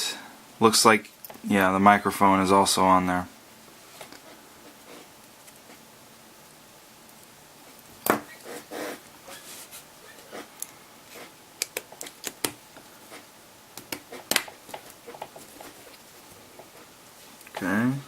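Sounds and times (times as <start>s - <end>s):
small parts clicking and tapping: 11.6s - 12.9s, 13.8s - 15.8s.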